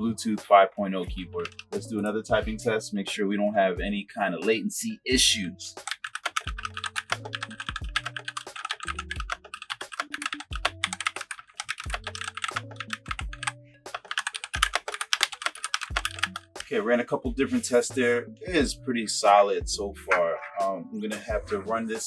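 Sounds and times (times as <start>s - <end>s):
mechanical keyboard typing: 1.4s - 1.8s, 5.8s - 16.6s.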